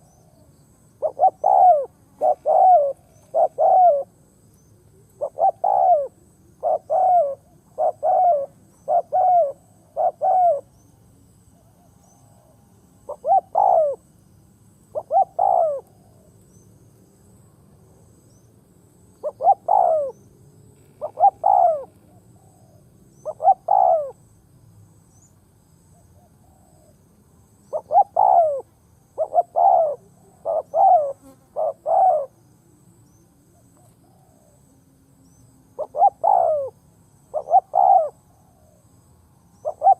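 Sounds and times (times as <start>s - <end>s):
dove cooing: 1.0s - 10.8s, 11.5s - 14.1s, 14.9s - 16.4s, 19.2s - 20.2s, 20.8s - 24.3s, 26.0s - 27.0s, 27.7s - 32.4s, 33.5s - 34.7s, 35.8s - 38.8s, 39.6s - 39.9s.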